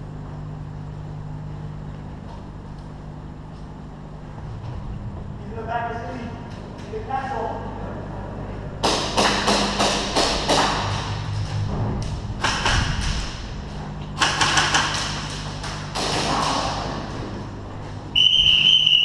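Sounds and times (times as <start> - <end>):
airsoft guns firing: 8.8 - 10.9, 14.2 - 17.0.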